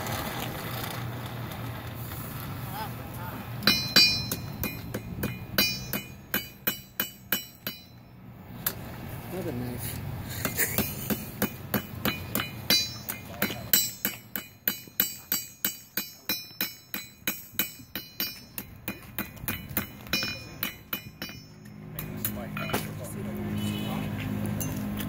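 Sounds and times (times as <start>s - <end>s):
hammer striking steel on anvil: 3.6s - 8.8s, 10.4s - 22.9s.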